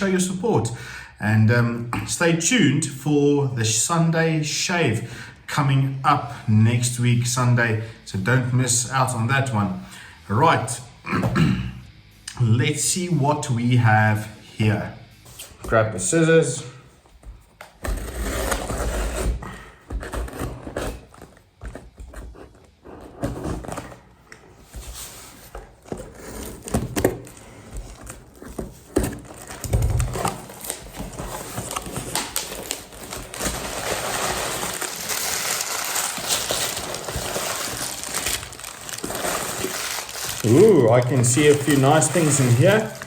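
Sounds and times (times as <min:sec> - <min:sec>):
packaging rustling and crinkling: 0:24.8 - 0:43.0.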